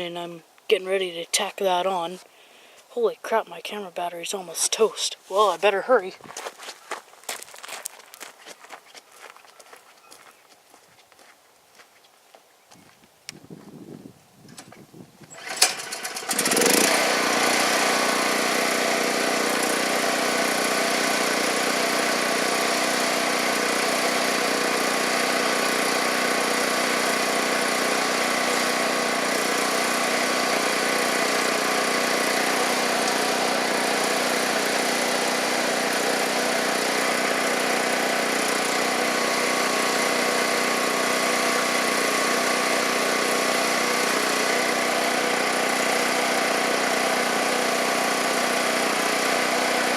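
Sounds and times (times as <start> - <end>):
small engine running: 15.2 - 49.9.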